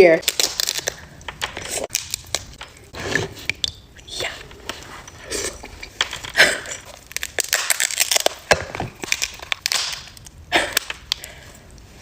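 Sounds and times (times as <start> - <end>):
seafood shells crunching: 0.2 - 2.9, 5.6 - 11.2.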